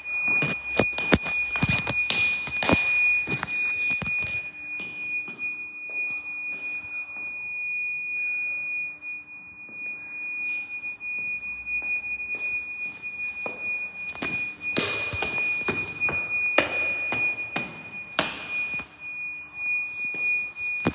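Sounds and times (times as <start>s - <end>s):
high-pitched electronic beeper tone: 12.4s - 19.0s.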